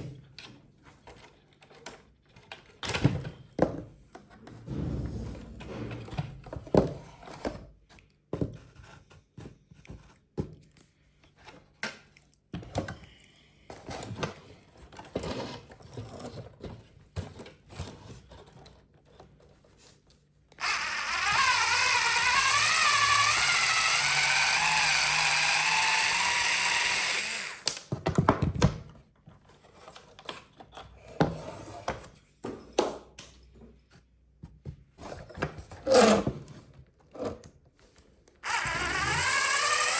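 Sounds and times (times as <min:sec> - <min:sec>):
small electric motor whining: 0:20.6 - 0:27.7, 0:38.4 - 0:39.9.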